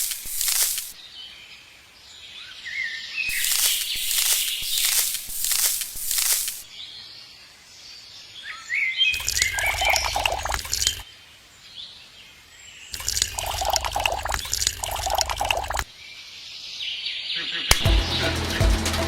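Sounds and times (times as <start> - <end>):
water splashing: 0.0 - 1.0, 9.2 - 11.0, 13.0 - 15.9
bird chirps: 2.4 - 6.5, 8.5 - 11.0.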